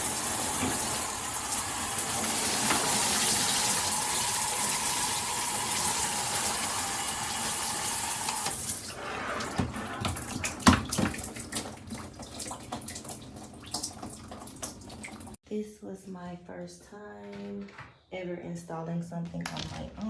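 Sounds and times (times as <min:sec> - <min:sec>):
water spraying from shower head: 0:00.0 - 0:08.8
water drips and splashes: 0:10.0 - 0:15.4.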